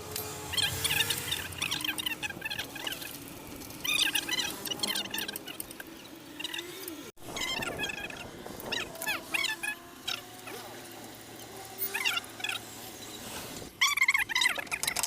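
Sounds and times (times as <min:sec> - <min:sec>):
high-pitched squeaky animal calls: 0:00.5 - 0:03.2, 0:03.8 - 0:10.6, 0:11.8 - 0:12.8, 0:13.8 - 0:15.0.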